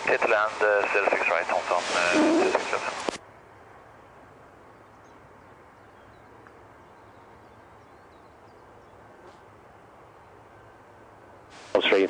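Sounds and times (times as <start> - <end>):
faint outdoor hiss: 0.0 - 12.0
small birds chirping: 3.7 - 10.9.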